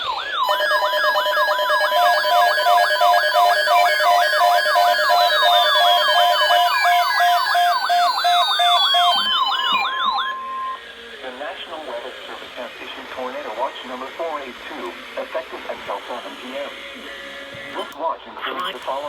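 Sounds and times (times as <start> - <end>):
fast rising siren yelp: 0.0 - 10.8
electronic on-off beeps: 0.4 - 10.8
steady electronic tone: 0.4 - 11.0.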